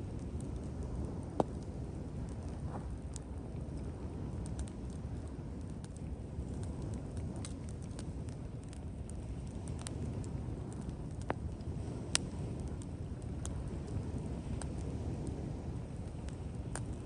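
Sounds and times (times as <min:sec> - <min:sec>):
wood fire crackling and popping: 0:00.0 - 0:17.0.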